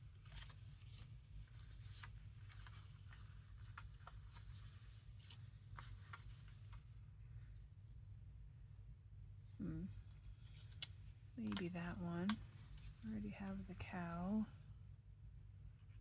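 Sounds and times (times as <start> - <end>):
paper rustling: 0.0 - 7.5, 10.3 - 13.6
steady low hum: 0.0 - 16.0.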